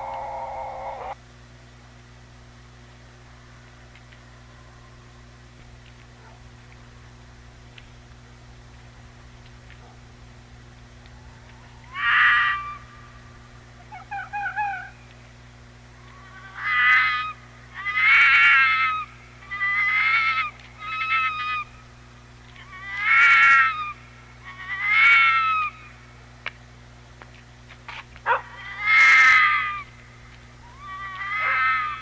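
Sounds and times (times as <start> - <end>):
animal calling: 0.0 - 1.2, 11.3 - 13.2, 13.8 - 15.1, 16.0 - 21.8, 22.5 - 26.0, 28.2 - 29.9, 30.6 - 32.0.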